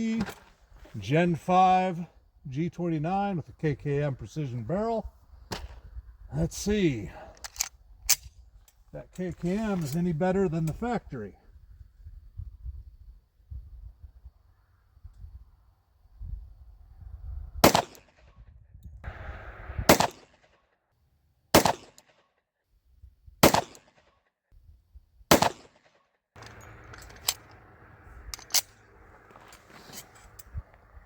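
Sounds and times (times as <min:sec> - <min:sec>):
pistol shots: 0:17.6 - 0:18.1, 0:19.9 - 0:20.3, 0:21.5 - 0:22.0, 0:23.4 - 0:24.0, 0:25.3 - 0:25.8.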